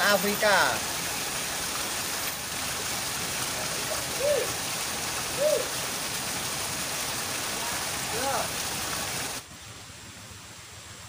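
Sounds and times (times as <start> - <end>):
river water rushing: 0.0 - 11.0
rising and falling hoots: 3.7 - 6.2.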